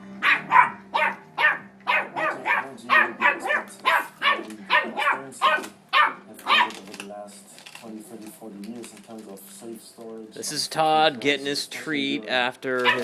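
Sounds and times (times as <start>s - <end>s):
dog barking: 0.2s - 6.8s.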